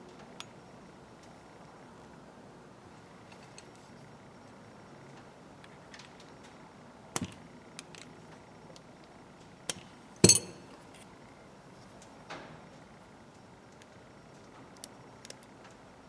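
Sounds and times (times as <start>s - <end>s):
metal hand tools clinking: 10.2s - 10.7s
sharp metallic taps: 10.2s - 10.7s.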